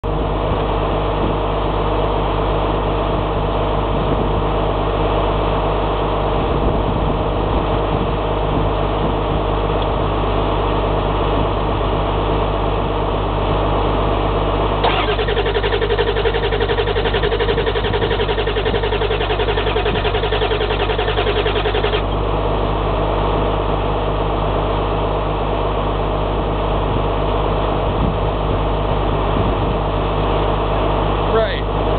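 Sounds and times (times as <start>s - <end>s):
steady engine drone: 0.0s - 31.9s
engine cranking on starter: 14.8s - 22.2s.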